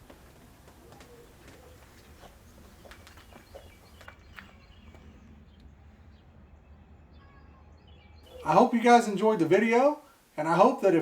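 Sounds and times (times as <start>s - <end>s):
low steady hum: 0.0s - 11.0s
bird chirps: 1.0s - 8.8s.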